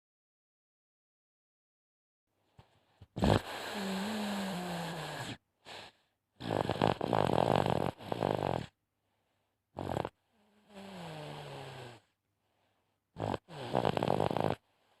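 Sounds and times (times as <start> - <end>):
baby snoring: 3.2 - 5.4, 6.4 - 8.8, 9.8 - 12.1, 13.2 - 14.7.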